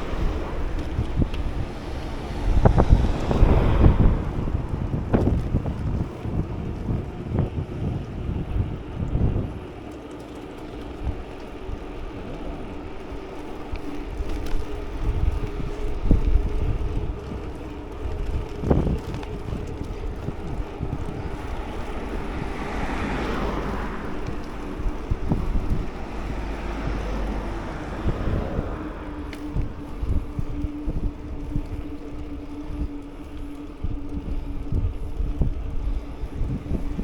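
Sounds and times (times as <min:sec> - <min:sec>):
gusty thumps: 0:00.0 - 0:09.6
scooter engine running: 0:00.0 - 0:37.0
wind buffeting microphone: 0:00.0 - 0:37.0.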